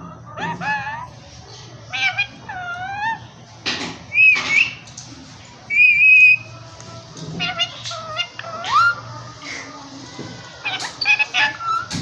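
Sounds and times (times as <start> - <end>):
parakeet whistling: 4.1 - 4.8, 5.7 - 6.5.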